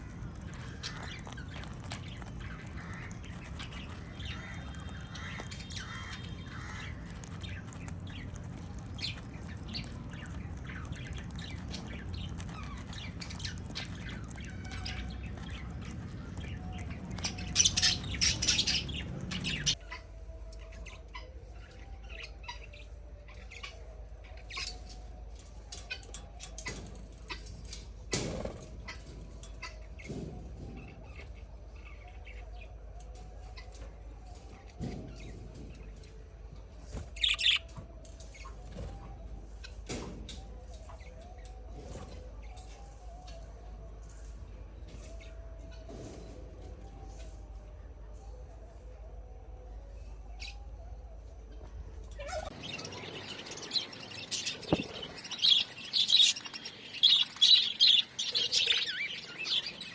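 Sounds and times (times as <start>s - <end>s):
parrots chirping and squawking: 0.0s - 20.0s, 37.0s - 37.7s, 52.2s - 59.9s.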